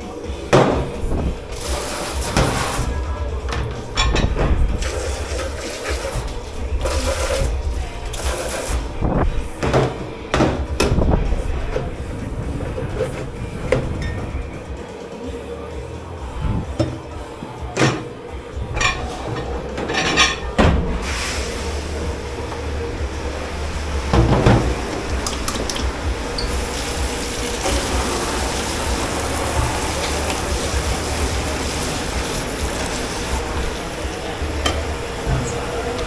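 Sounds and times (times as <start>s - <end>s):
water running into sink: 0.0s - 14.7s, 16.4s - 36.0s
dishes clattering: 0.0s - 14.8s, 16.4s - 21.8s, 24.1s - 36.0s
machine hum: 0.0s - 36.0s.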